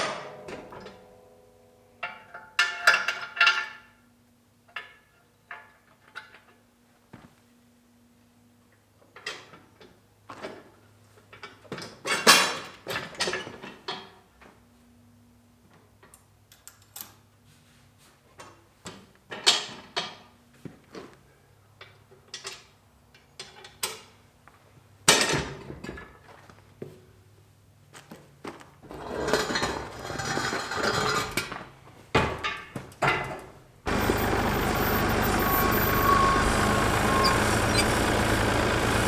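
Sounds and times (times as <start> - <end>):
farm equipment clanking: 33.1 - 39.0.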